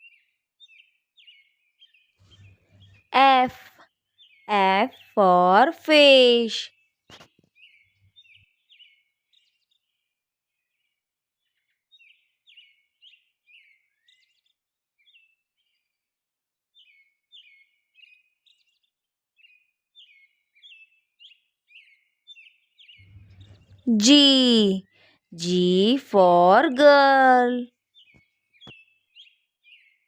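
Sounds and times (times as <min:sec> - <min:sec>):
small birds chirping: 0:00.0 - 0:16.1, 0:16.7 - 0:30.0.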